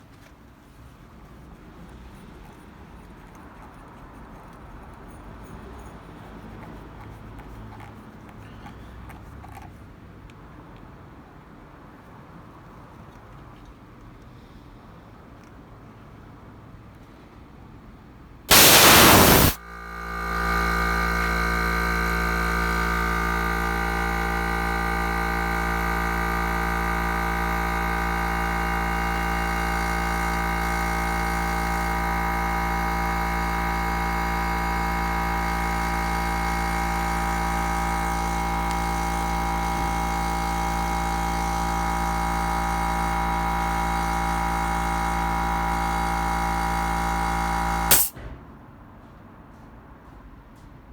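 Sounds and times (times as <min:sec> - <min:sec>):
machine starting with a burst: 0:18.5 - 0:48.2
motor humming steadily: 0:18.5 - 0:48.2.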